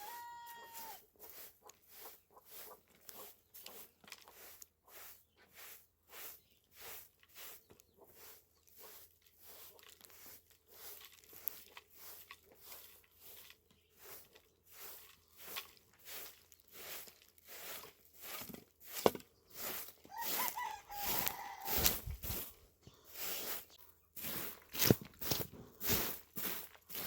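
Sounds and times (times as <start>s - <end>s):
footsteps crunching on gritty ground: 7.7s - 27.0s.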